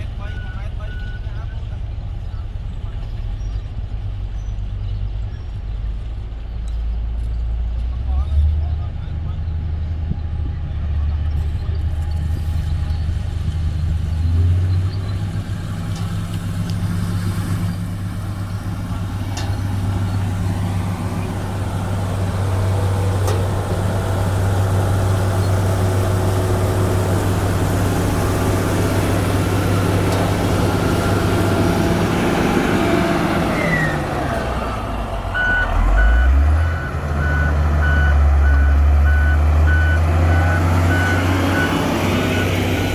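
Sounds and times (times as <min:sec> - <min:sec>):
diesel engine working: 0:00.0 - 0:42.9
reversing alarm beeping: 0:35.3 - 0:42.7.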